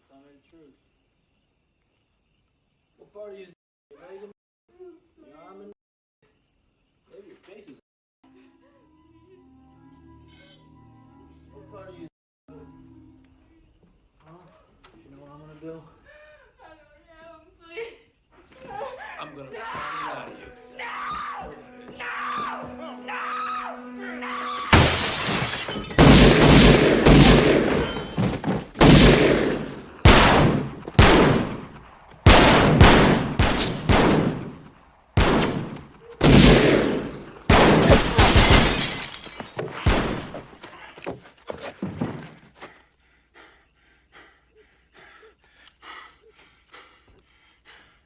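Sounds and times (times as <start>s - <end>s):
gunshots with echo: 26.0s - 38.3s.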